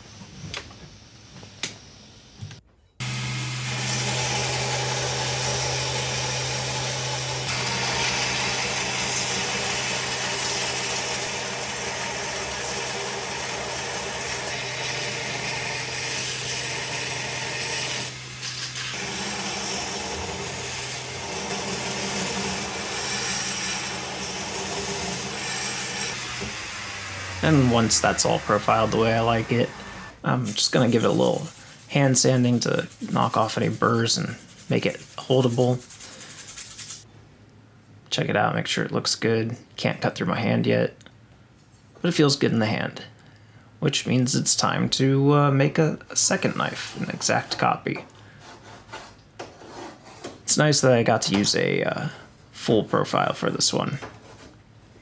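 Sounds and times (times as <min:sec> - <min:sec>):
belt grinder grinding steel: 0:03.0 - 0:31.8.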